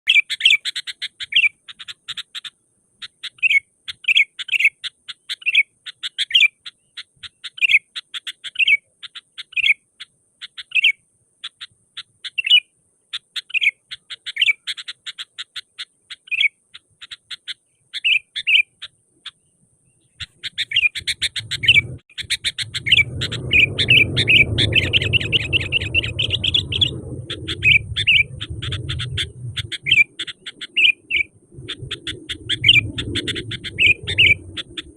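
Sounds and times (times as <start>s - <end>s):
bird chattering chirps: 0.1s - 34.9s
bird whistled notes: 20.0s - 34.9s
low rumbling noise: 21.3s - 34.9s.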